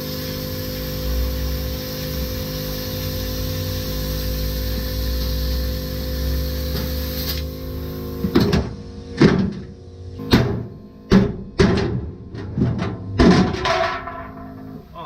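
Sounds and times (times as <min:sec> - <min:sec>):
plasma cutter hissing and humming: 0:00.0 - 0:09.0.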